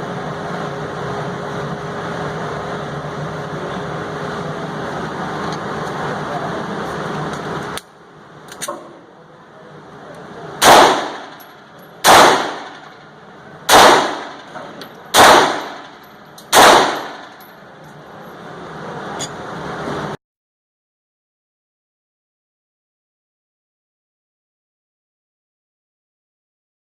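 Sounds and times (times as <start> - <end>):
pistol shots: 10.6 - 11.4, 12.0 - 13.0, 13.7 - 14.5, 15.1 - 17.4.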